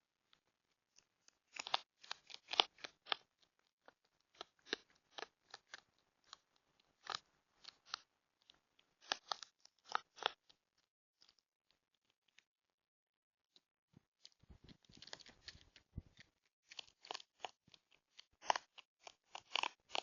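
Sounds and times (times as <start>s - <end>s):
raccoon chewing crunches: 1.4s - 8.1s, 8.9s - 10.6s, 14.3s - 20.0s.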